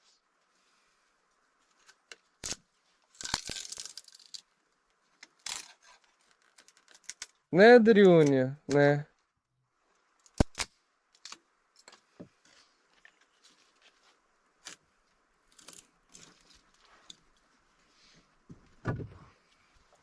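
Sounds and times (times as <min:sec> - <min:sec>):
objects being handled: 0:11.2 - 0:20.0.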